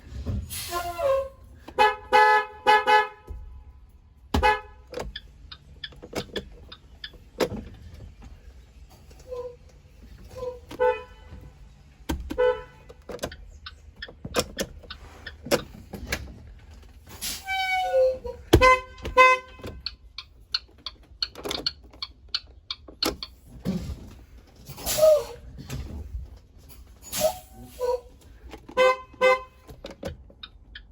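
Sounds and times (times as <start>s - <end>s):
bus horn honking: 0.5s - 5.0s, 10.4s - 13.1s, 17.2s - 20.0s, 27.1s - 29.7s
sharp clicks and knocks: 12.1s - 17.0s, 18.5s - 24.2s.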